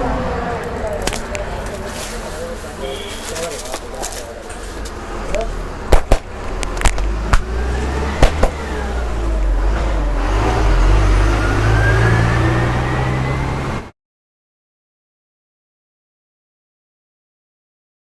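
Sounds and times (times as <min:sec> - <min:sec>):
vehicle engine running: 0:00.0 - 0:11.0
sharp loud snaps: 0:05.9 - 0:07.6, 0:08.2 - 0:08.7
thin rising whine: 0:10.8 - 0:13.7.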